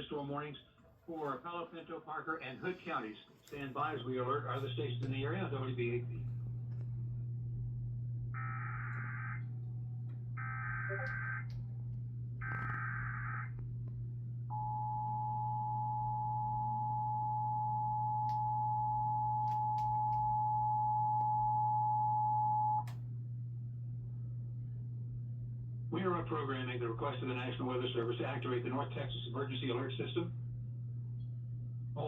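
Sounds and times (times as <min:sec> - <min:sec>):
warbling data tones: 0:08.3 - 0:09.7, 0:10.4 - 0:11.8, 0:12.4 - 0:13.7.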